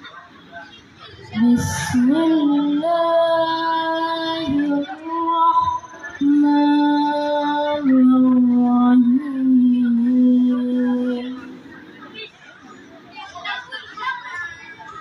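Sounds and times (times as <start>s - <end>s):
woman reciting melodically: 1.1s - 12.3s.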